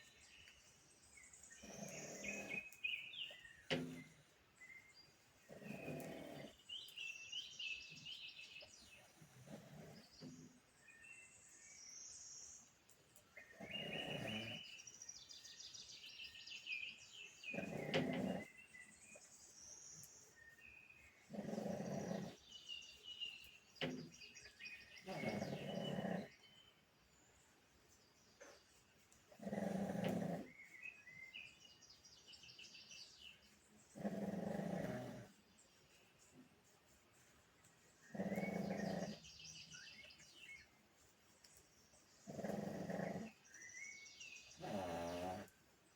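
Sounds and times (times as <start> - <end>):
faint birds chirping: 0.0 - 45.9
dog snoring: 5.5 - 6.6, 9.3 - 10.2, 13.6 - 14.6, 21.3 - 22.4, 25.1 - 26.3, 29.4 - 30.5, 34.0 - 35.3, 38.1 - 39.3, 42.3 - 43.4, 44.6 - 45.5.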